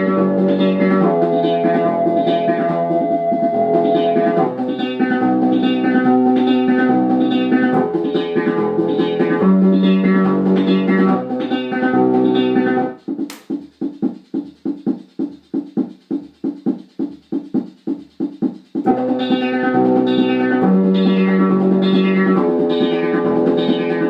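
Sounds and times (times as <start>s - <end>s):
electronic keyboard chords: 0.0s - 13.0s, 18.8s - 24.0s
sharp click: 13.2s - 13.6s.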